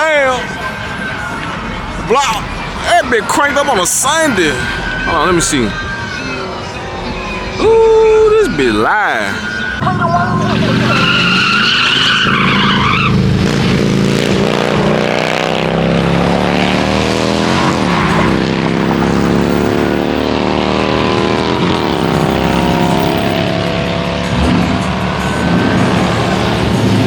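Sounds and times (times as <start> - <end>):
car engine revving hard: 8.9 - 27.0.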